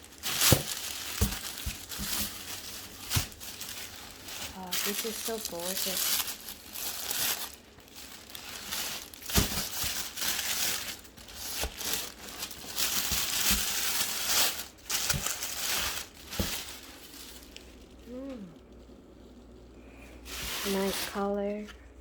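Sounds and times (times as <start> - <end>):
packaging crinkling and rustling: 0.0 - 22.0.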